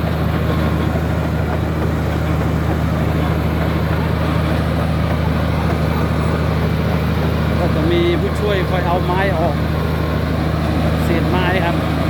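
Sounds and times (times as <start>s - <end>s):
bulldozer diesel engine running: 0.0s - 12.0s.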